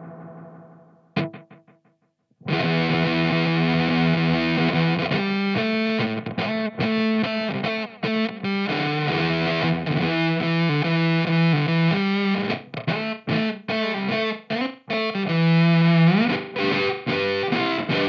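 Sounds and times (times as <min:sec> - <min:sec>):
distorted fuzz electric guitar riff: 0:00.0 - 0:01.7, 0:02.4 - 0:18.0.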